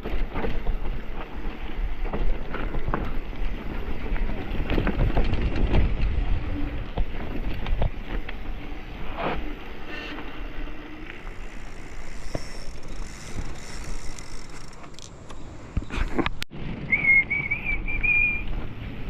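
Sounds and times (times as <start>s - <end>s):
bike rattles: 0.0s - 19.0s
bike tyres rumbling on trail: 0.0s - 19.0s
high wavering whistle: 16.9s - 18.5s.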